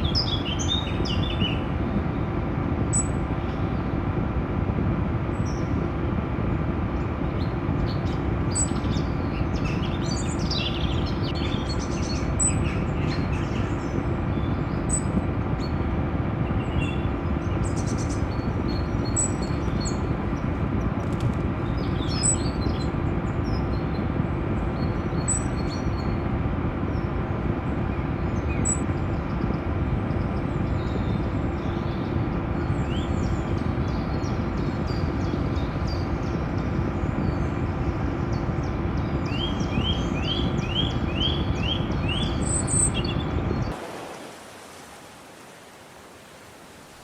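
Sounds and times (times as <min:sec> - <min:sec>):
birds chirping: 0:00.0 - 0:04.1, 0:05.2 - 0:47.0
low rumbling noise: 0:00.0 - 0:47.0
drone rotors humming: 0:35.6 - 0:47.0.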